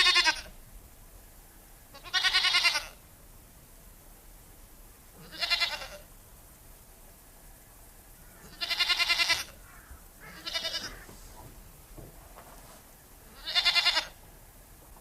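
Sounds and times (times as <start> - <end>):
goat bleating: 0.0 - 0.5, 1.9 - 3.0, 5.2 - 6.0, 8.4 - 9.6, 10.2 - 11.1, 13.3 - 14.2.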